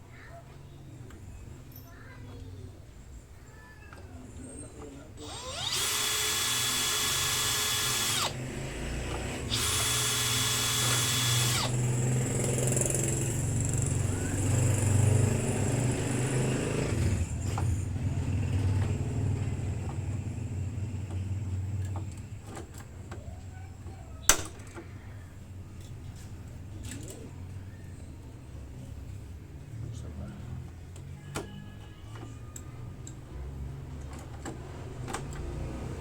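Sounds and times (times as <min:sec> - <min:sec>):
power drill whirring: 0:05.2 - 0:08.5, 0:09.2 - 0:12.0
uneven whirring and rumbling: 0:05.2 - 0:12.0
sharp click: 0:24.3 - 0:24.6.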